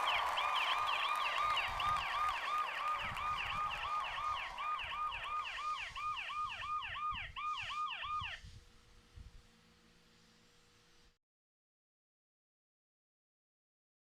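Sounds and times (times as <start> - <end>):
phone alarm siren wail: 0.0 - 8.4.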